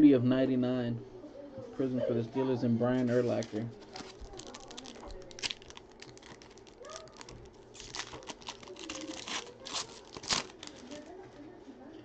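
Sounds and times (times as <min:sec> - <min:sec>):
cards being handled: 0:03.0 - 0:11.1
foil wrapper crinkling and tearing: 0:03.3 - 0:11.2.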